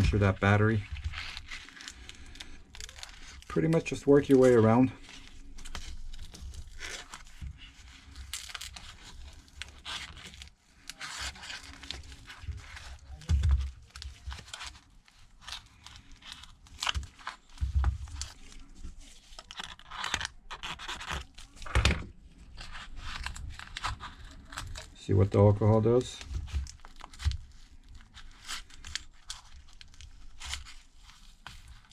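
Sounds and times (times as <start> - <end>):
plastic card scraping adhesive: 14.0 - 21.8.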